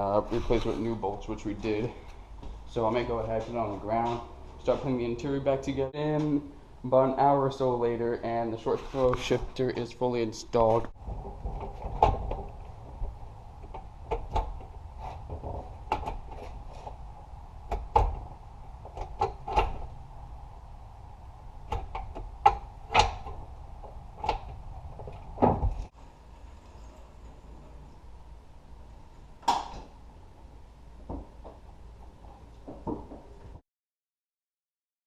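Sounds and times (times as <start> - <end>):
low steady hum: 0.0 - 33.6
sharp clicks and clunks: 10.6 - 17.0, 17.7 - 19.9, 21.7 - 25.9.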